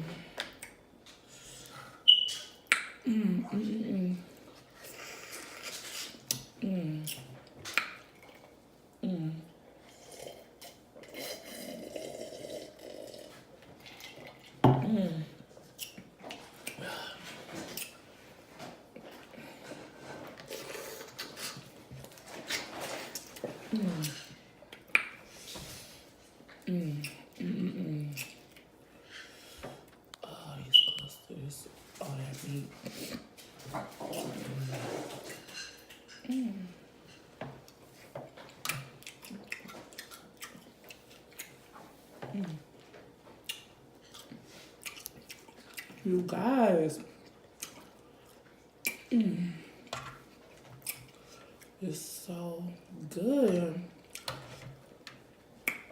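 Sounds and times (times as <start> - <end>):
person humming mm: 3.0 - 4.2, 9.0 - 9.5, 26.6 - 28.3, 49.1 - 49.7
wet chewing and lip smacking: 38.5 - 41.6, 43.4 - 46.0, 47.2 - 49.1, 50.8 - 51.8.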